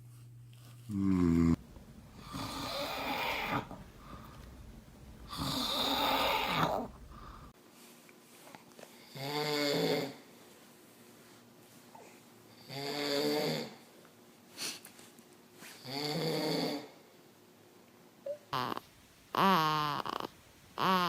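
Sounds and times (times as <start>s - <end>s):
man snoring: 0.9s - 7.5s.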